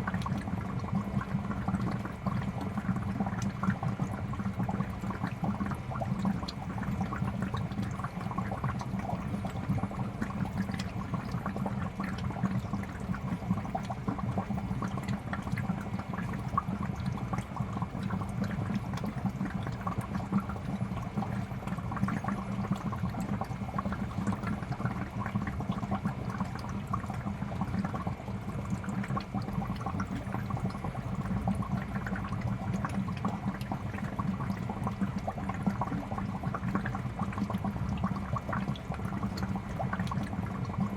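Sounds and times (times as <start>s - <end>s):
aquarium bubbling: 0.0s - 40.9s.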